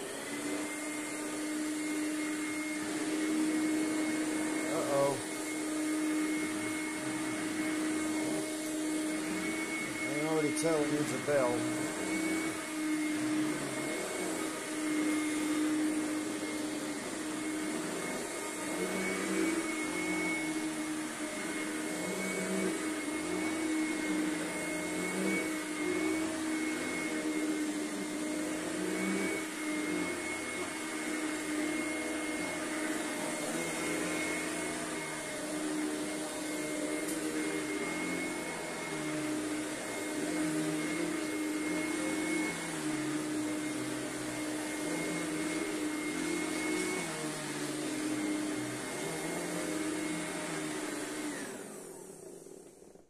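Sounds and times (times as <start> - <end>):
vacuum cleaner motor whine: 0.0 - 53.0
person speaking: 4.6 - 5.2, 10.1 - 11.8.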